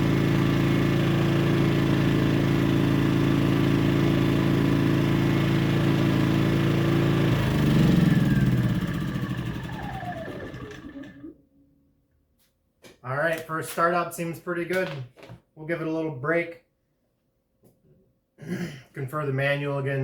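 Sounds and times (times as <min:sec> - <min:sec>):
generator engine running: 0:00.0 - 0:11.4
engine winding down whine: 0:03.9 - 0:11.4.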